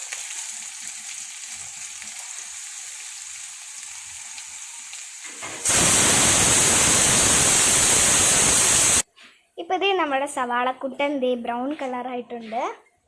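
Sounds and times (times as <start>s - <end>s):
onions sizzling in hot oil: 0.0s - 9.0s.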